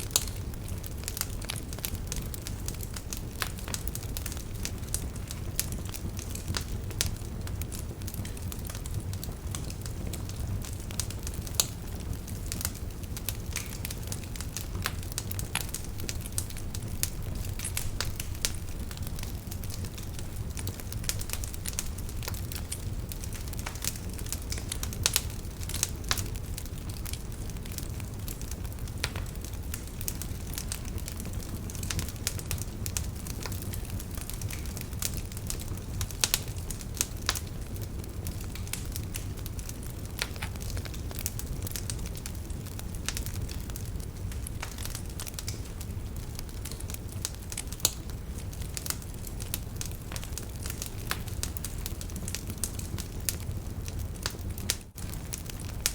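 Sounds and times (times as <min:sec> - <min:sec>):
fire crackling and popping: 0:00.0 - 0:55.9
low rumble of flame: 0:00.0 - 0:55.9.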